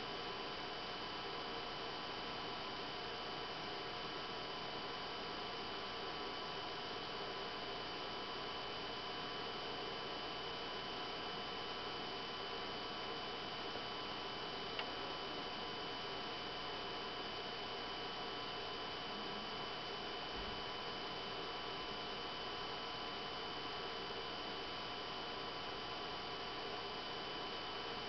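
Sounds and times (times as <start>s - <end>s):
projector cooling fans running: 0.0s - 28.0s
small click: 14.8s - 15.0s.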